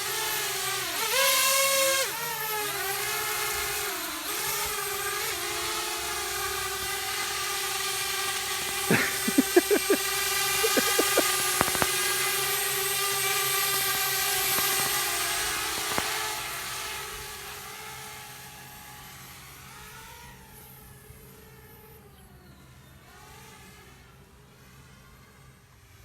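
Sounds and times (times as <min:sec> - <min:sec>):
drone propellers whining: 0:03.2 - 0:18.7
sharp clicks: 0:10.6 - 0:12.3, 0:14.3 - 0:16.4.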